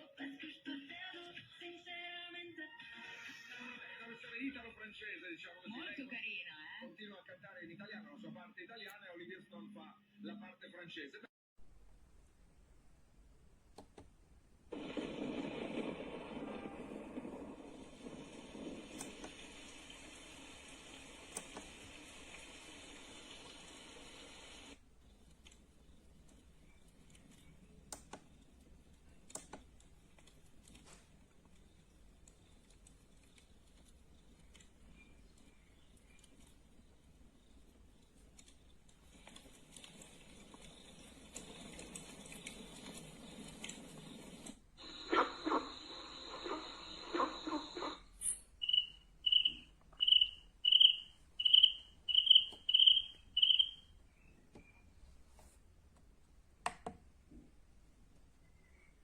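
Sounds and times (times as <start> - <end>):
soft crackling hiss: 11.6 - 56.4
small clicks: 18.1 - 24.4, 25.1 - 44.6
recorded cricket chirping: 44.8 - 54.8.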